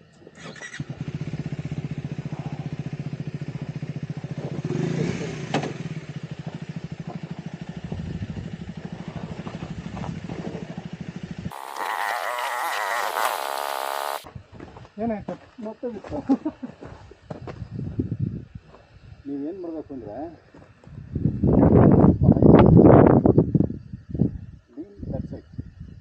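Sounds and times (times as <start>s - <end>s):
motorcycle engine running: 0.8s - 14.2s.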